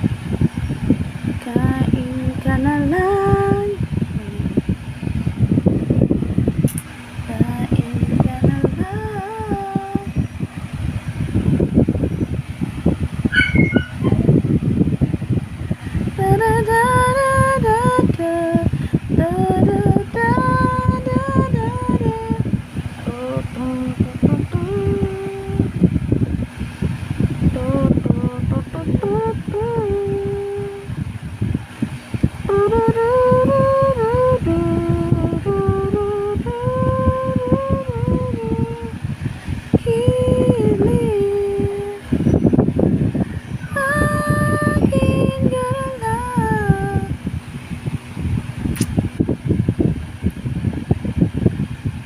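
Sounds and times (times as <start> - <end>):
woman singing slow song: 0.0 - 47.8
low rumbling background noise: 0.0 - 52.0
person humming a slow melody: 1.4 - 4.7, 6.7 - 10.4, 16.0 - 26.0, 27.3 - 31.0, 32.4 - 39.1, 39.7 - 47.2.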